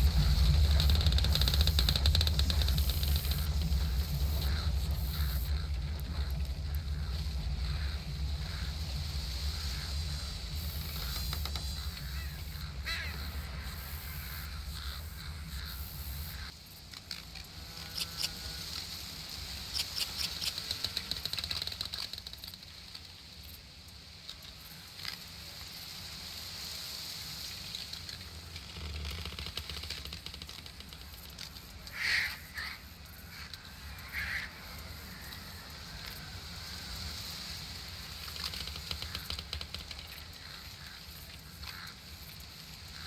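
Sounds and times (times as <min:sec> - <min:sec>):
birds chirping: 0:00.0 - 0:16.5
low rumble: 0:00.0 - 0:16.5.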